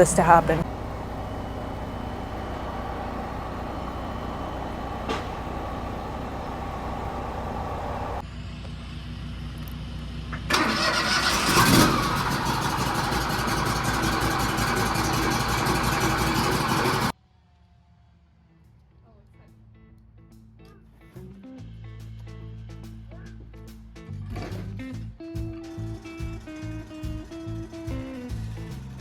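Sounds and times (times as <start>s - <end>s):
engine running steadily: 0.0s - 17.1s, 24.4s - 29.0s
loud engine at fast beat: 0.0s - 17.1s, 25.4s - 29.0s.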